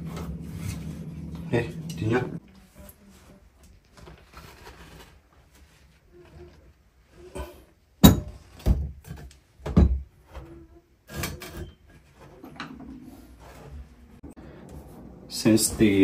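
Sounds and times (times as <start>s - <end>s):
objects knocking and clunking: 7.3s - 14.9s.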